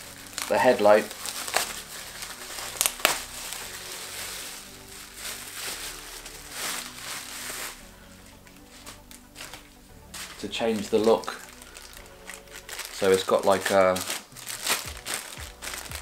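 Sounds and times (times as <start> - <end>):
packaging crinkling and rustling: 0.0 - 16.0.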